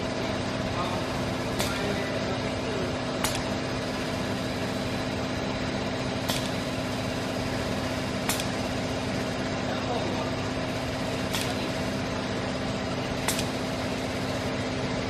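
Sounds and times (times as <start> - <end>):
steady machine hum: 0.0 - 15.0
sharp machine click: 1.5 - 2.2, 3.2 - 4.4, 6.2 - 7.6, 8.2 - 8.8, 11.0 - 11.8, 13.2 - 14.4.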